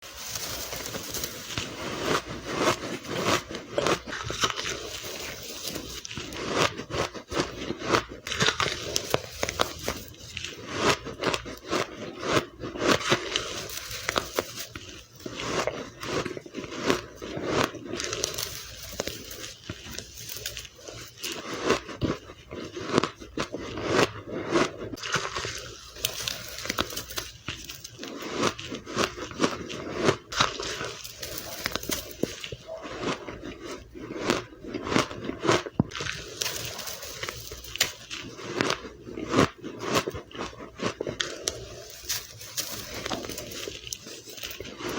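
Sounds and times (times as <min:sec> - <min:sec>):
ice crunched between teeth: 0:00.0 - 0:44.9.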